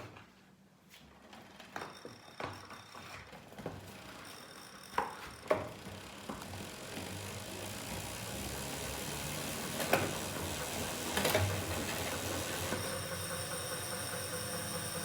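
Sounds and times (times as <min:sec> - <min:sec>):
flywheel whir: 0:01.8 - 0:15.0
flywheel ticking: 0:05.4 - 0:15.0.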